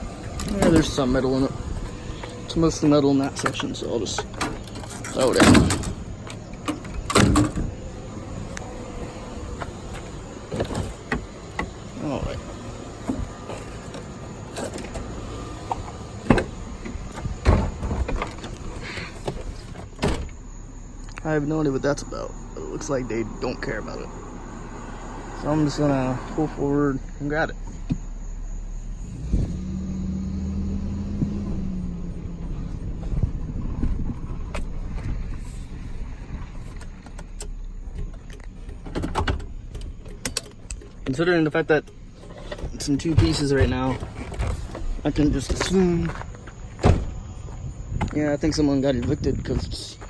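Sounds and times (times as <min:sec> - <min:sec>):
truck engine rumbling: 0:00.0 - 0:50.0
steady low rumble: 0:30.9 - 0:50.0
sharp knocks and thuds: 0:42.4 - 0:48.3.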